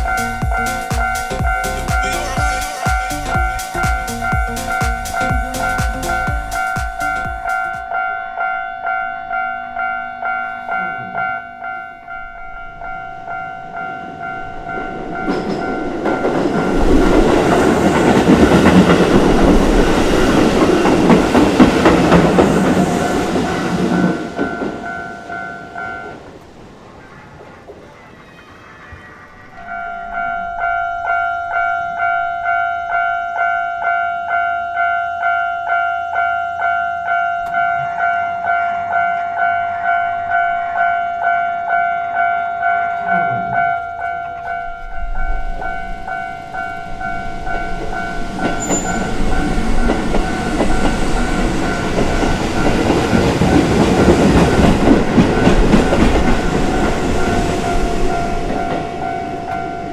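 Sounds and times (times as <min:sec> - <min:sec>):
train running noise: 0:00.0 - 0:08.1, 0:13.3 - 0:28.1, 0:43.0 - 0:59.9
level-crossing warning bell: 0:00.0 - 0:26.3, 0:29.6 - 0:59.9.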